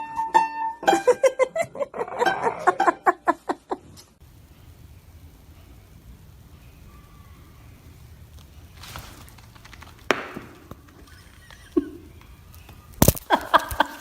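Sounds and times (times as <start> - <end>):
sharp knocks and thuds: 10.1 - 10.8.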